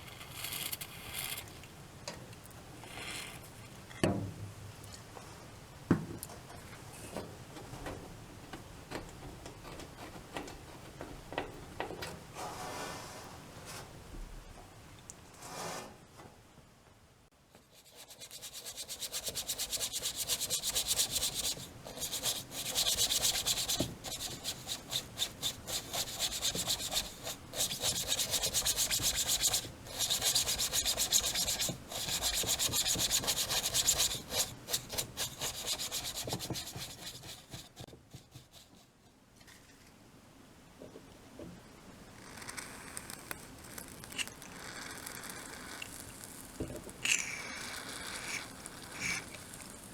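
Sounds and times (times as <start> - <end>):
fast rubbing strokes: 17.6 - 38.9, 47.0 - 49.9.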